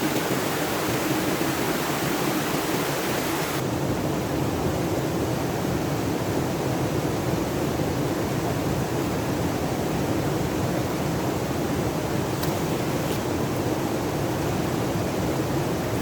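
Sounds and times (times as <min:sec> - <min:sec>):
stream rushing: 0:00.0 - 0:03.6, 0:09.0 - 0:16.0.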